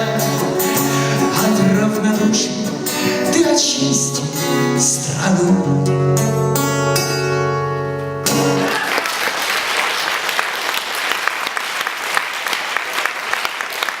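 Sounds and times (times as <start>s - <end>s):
acoustic guitar chord ringing: 0.0s - 8.7s
audience applauding: 8.4s - 14.0s.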